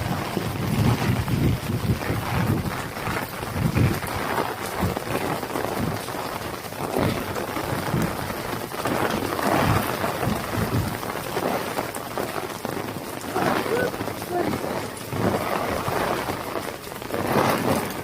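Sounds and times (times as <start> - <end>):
low rumbles: 0.0 - 11.5
heavy rain falling: 0.0 - 18.0.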